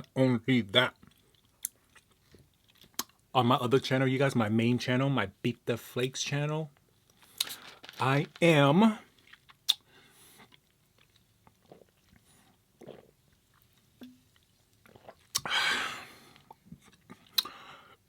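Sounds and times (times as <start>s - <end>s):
mouth chewing food: 9.0s - 17.6s.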